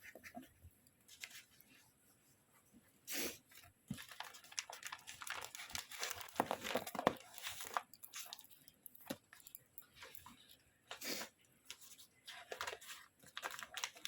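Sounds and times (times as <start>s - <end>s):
packaging crinkling and rustling: 3.6s - 14.0s.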